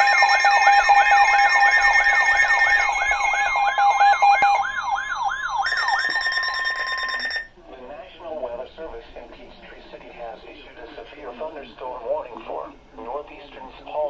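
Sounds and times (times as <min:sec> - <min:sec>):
steady alert tones: 0:00.0 - 0:07.5
sweeping emergency siren: 0:00.0 - 0:07.5.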